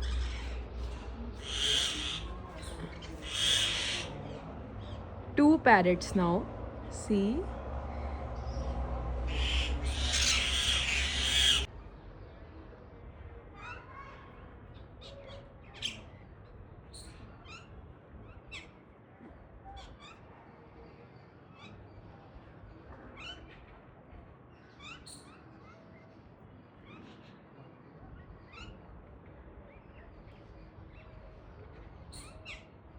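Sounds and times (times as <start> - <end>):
birds calling: 0.0 - 11.7.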